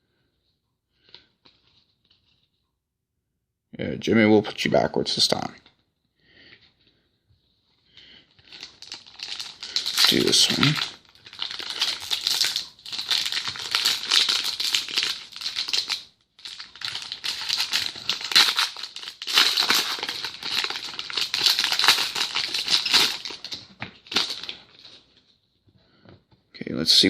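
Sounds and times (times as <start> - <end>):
wrapper tearing and crinkling: 8.4 - 25.2.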